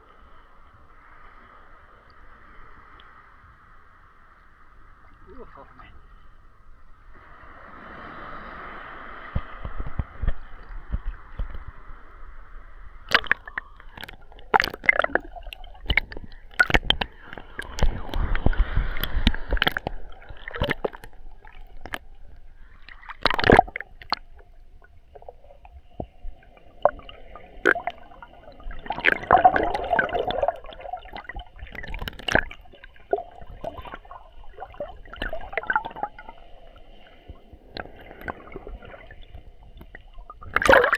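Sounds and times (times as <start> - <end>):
muffled water sloshing and gurgling: 0.0 - 40.9
water knocking against plastic case: 13.1 - 18.2.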